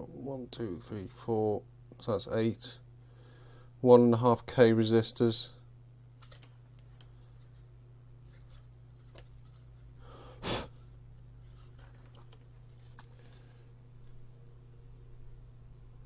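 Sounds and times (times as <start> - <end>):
low steady hum: 0.0 - 16.0
sharp breath through nose: 10.0 - 10.8.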